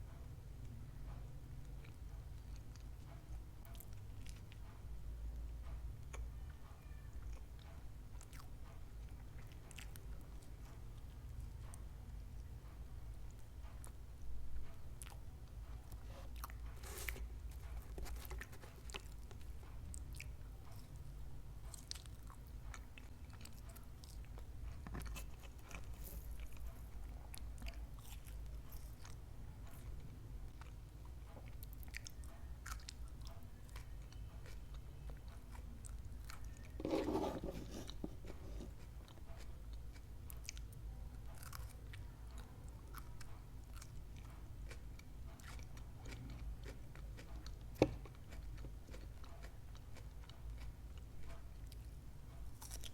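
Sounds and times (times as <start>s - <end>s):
person chewing crunchy food: 15.0s - 21.0s, 21.6s - 29.8s, 30.5s - 51.9s, 52.5s - 52.9s.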